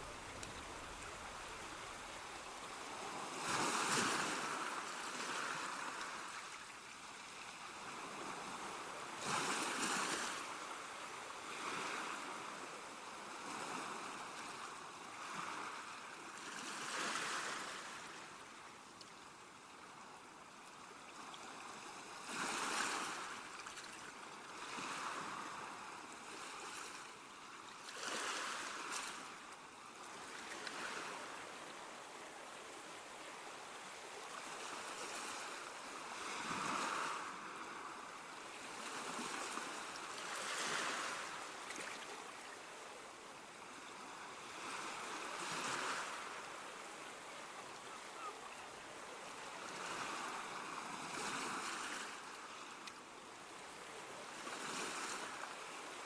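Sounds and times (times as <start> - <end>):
water rushing: 0.0 - 6.6.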